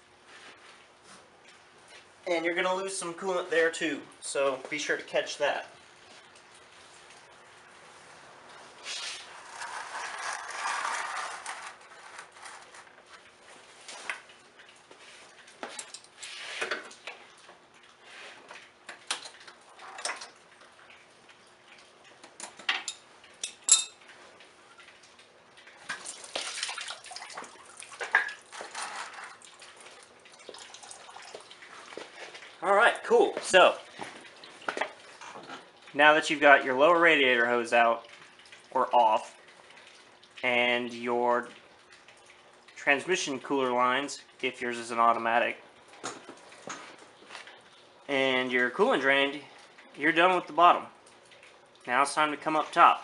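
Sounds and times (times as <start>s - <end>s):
coolant splashing into pan: 21.9s - 53.0s.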